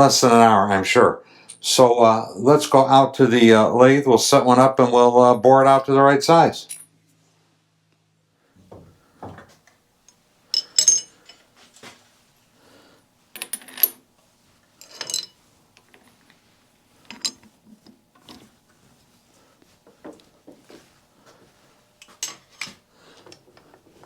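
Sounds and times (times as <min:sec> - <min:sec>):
metal tools clinking and clanking: 0:10.5 - 0:11.5, 0:14.8 - 0:16.3, 0:17.0 - 0:17.5, 0:22.0 - 0:23.8.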